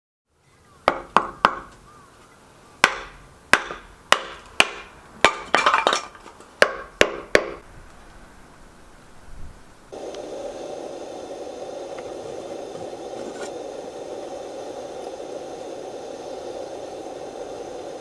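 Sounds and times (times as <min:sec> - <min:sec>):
wood being struck: 0:00.9 - 0:01.8, 0:02.8 - 0:07.6.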